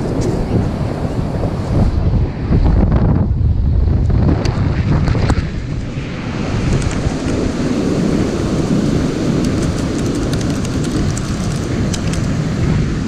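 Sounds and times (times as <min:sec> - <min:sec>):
wind buffeting microphone: 0:00.0 - 0:13.0
sharp clicks: 0:09.4 - 0:12.4.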